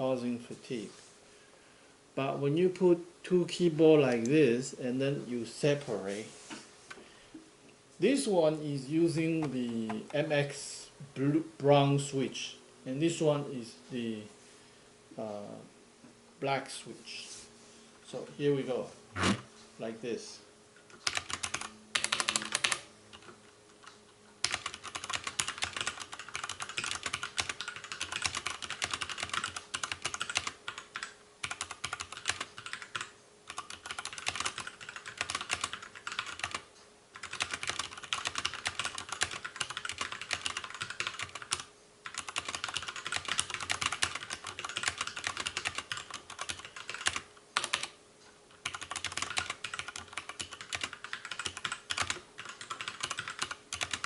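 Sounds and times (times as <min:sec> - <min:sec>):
mechanical keyboard typing: 0:21.0 - 0:36.6, 0:37.2 - 0:47.9, 0:48.6 - 0:54.0.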